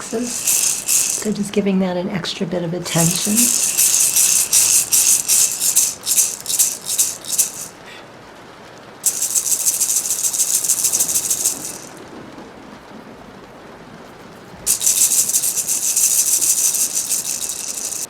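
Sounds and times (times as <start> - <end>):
hand rattle shaken: 0.0 - 1.6, 2.9 - 7.8, 9.0 - 12.0, 14.7 - 18.0.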